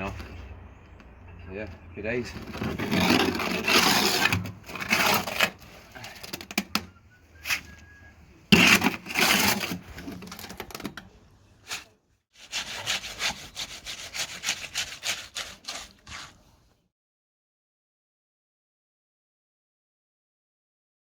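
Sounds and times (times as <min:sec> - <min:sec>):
hand tool scraping rough surface: 0:02.2 - 0:10.8, 0:11.6 - 0:16.6.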